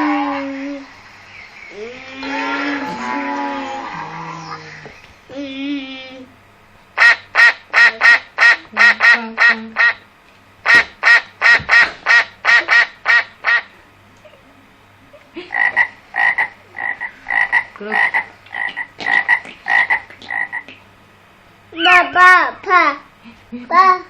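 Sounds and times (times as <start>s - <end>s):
rapid frog-like croaking: 15.5s - 20.7s.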